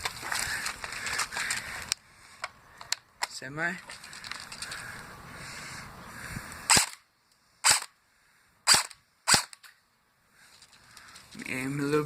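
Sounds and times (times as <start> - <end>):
airsoft gun shots: 6.7 - 7.0, 7.6 - 7.9, 8.7 - 9.6.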